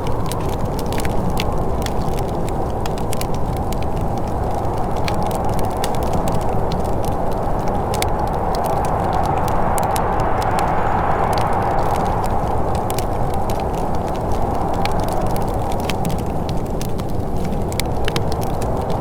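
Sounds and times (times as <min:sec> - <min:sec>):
wood fire crackling: 0:00.0 - 0:19.0
low rushing noise: 0:08.1 - 0:13.9.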